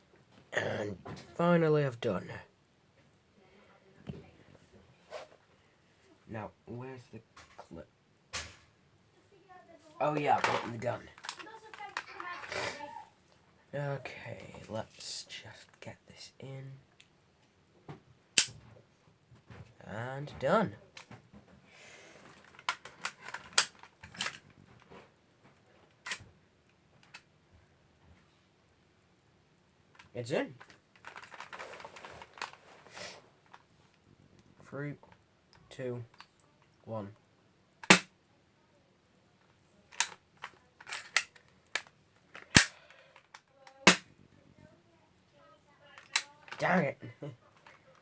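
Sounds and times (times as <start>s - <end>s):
plastic magazine clicks: 10.4s - 12.3s, 22.5s - 24.4s, 37.8s - 38.1s, 39.9s - 44.1s, 46.0s - 46.6s.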